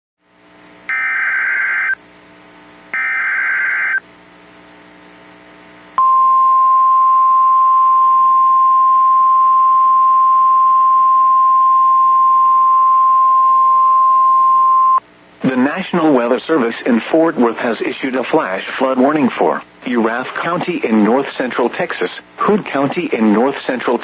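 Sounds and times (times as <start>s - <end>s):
steady alarm tone: 0.9s - 2.0s, 2.9s - 4.0s.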